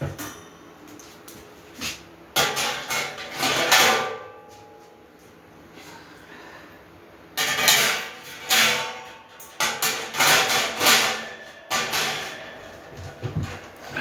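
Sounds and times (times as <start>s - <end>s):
metal grill parts clanking: 2.3s - 5.4s, 7.4s - 14.0s.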